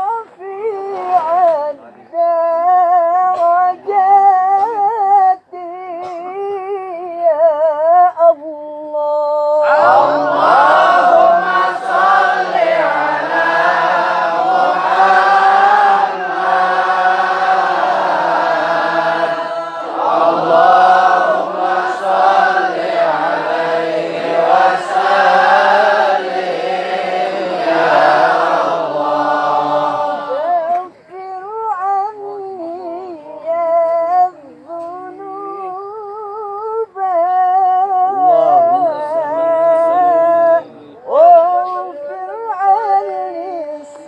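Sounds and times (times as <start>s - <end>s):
man chanting devotional song: 9.5s - 31.4s, 37.1s - 44.0s.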